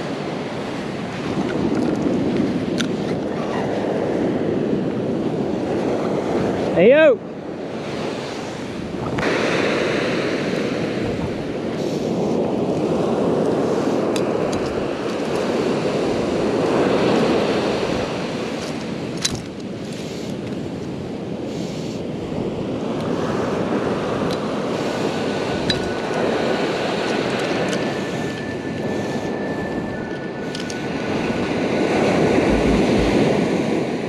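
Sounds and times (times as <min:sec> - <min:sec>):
wind on microphone: 0:00.0 - 0:34.0
surf washing onto beach: 0:03.7 - 0:21.4, 0:30.8 - 0:34.0.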